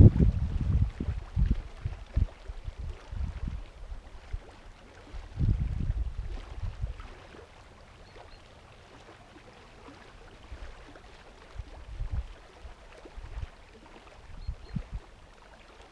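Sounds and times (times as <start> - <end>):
wind buffeting microphone: 0.0 - 7.1, 11.5 - 12.4, 14.2 - 15.1
water lapping against shore: 0.0 - 15.9.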